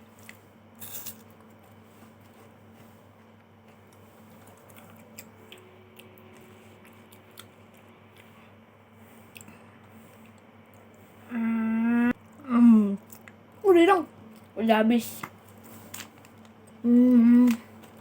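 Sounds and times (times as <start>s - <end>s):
steady low hum: 0.0s - 18.0s
mouth chewing crunchy wafer: 3.9s - 8.4s.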